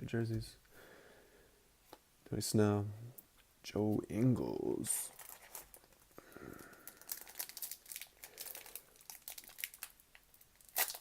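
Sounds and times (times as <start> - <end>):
wrapper crinkling and tearing: 5.1 - 11.0.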